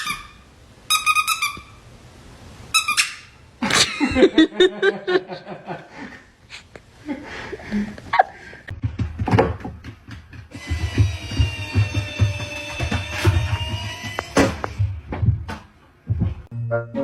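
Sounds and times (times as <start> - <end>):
high-pitched squeak: 0.0 - 1.8, 2.8 - 3.4, 10.6 - 14.8
choppy laughter: 3.6 - 6.2.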